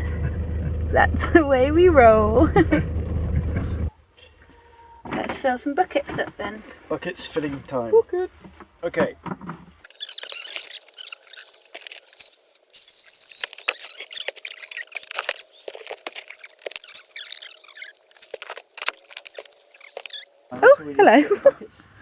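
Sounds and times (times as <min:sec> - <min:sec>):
high squeaky chirps: 0:09.8 - 0:20.5.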